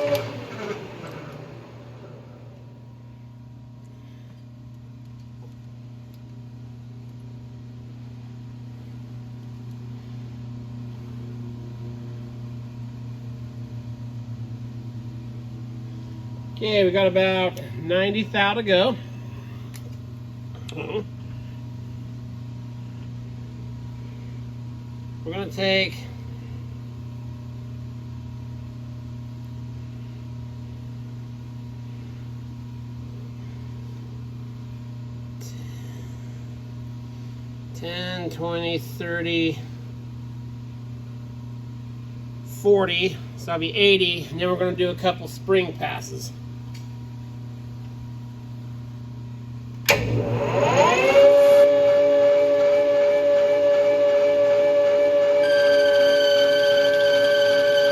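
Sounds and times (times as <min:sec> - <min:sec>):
metal lathe humming: 0:00.0 - 0:03.0, 0:49.9 - 0:57.9
low steady hum: 0:00.0 - 0:57.9.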